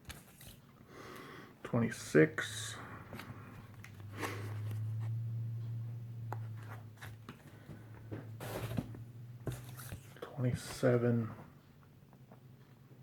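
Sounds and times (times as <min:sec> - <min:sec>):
comic books rustling: 0:00.0 - 0:00.6, 0:03.0 - 0:05.2, 0:06.4 - 0:11.4
low steady hum: 0:00.0 - 0:13.0.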